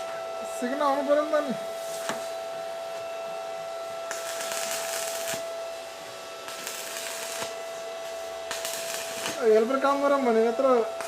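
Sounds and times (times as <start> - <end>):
welding machine whine: 0.0 - 11.0
sizzling arc crackle: 3.8 - 11.0.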